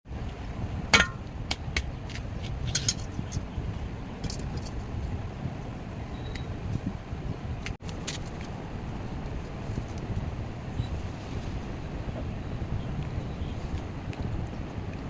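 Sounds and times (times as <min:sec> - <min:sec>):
steady low rumble: 0:07.8 - 0:15.0.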